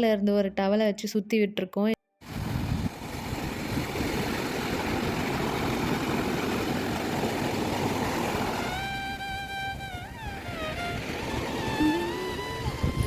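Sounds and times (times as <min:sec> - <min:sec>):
wind buffeting microphone: 0:02.2 - 0:08.7, 0:09.4 - 0:13.0
sea surf washing: 0:02.2 - 0:13.0.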